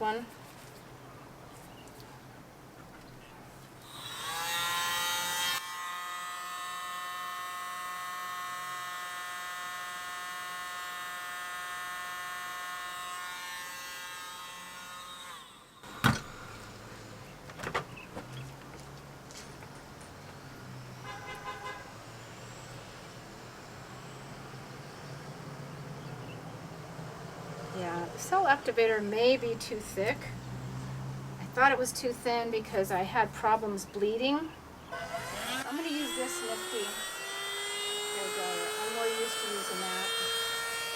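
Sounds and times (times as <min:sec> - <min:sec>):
electric air blower motor whine: 0:03.8 - 0:17.4, 0:22.0 - 0:26.0, 0:34.9 - 0:40.9.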